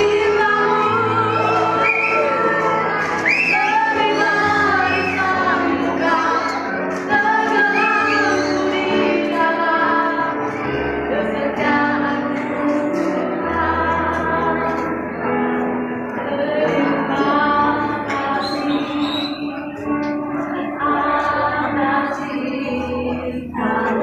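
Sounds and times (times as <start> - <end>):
musical accompaniment: 0.0 - 24.0
girl singing: 3.2 - 14.8.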